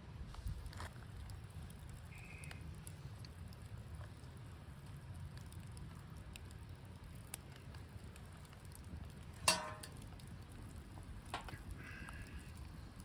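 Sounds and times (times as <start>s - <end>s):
bonfire crackling and popping: 0.0s - 13.0s
low steady rumble: 3.0s - 13.0s.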